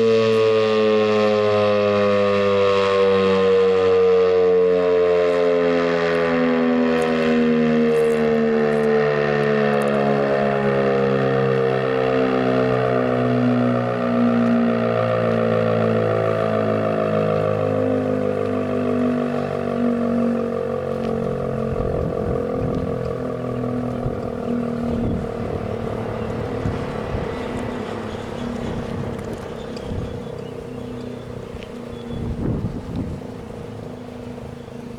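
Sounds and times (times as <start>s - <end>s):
fire siren winding down: 0.0s - 34.9s
wind rumble on microphone: 7.0s - 34.9s.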